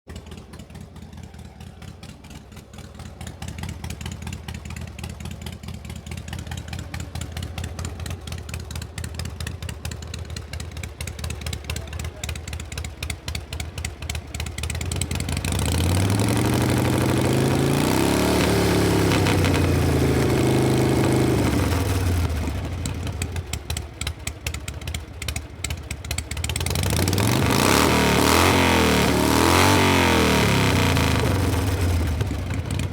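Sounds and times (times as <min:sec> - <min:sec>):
motorcycle engine idling: 0:00.1 - 0:32.9
motorcycle engine revving: 0:00.1 - 0:32.9.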